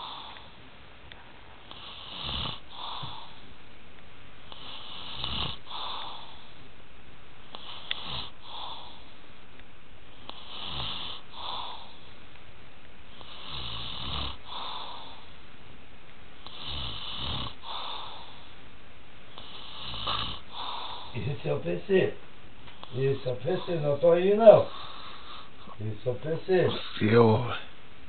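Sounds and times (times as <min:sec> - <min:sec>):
soft breath: 0:00.0 - 0:00.6, 0:01.2 - 0:03.6, 0:04.5 - 0:06.7, 0:07.4 - 0:09.3, 0:10.1 - 0:12.3, 0:14.3 - 0:15.4, 0:17.5 - 0:18.7, 0:19.3 - 0:21.4, 0:22.7 - 0:25.8
man snoring: 0:01.7 - 0:03.4, 0:04.5 - 0:06.4, 0:07.5 - 0:09.0, 0:10.3 - 0:12.0, 0:13.2 - 0:15.2, 0:16.4 - 0:18.3, 0:19.4 - 0:21.4.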